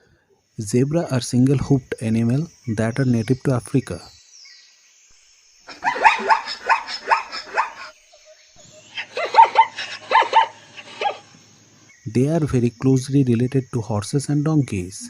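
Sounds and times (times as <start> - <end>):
zebra yelping barks: 5.7 - 8.0, 8.6 - 11.3.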